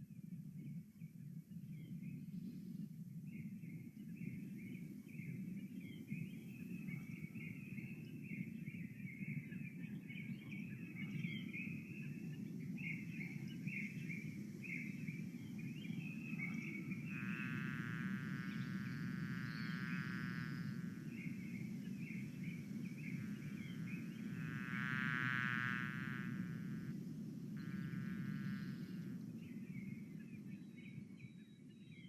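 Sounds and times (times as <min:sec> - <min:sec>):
steady low noise: 0:16.5 - 0:31.3
buzzing tone: 0:17.1 - 0:21.2, 0:22.9 - 0:29.4.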